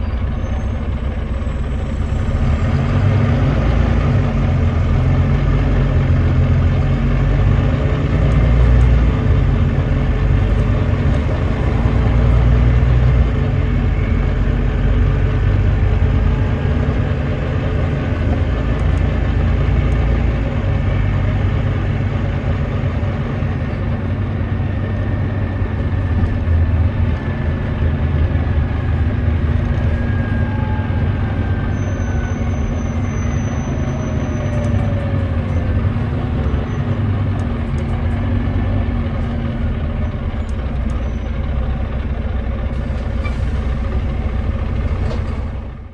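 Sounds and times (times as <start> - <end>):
bus diesel engine rumble: 0.0 - 45.9
faint whistling tones: 29.6 - 42.1.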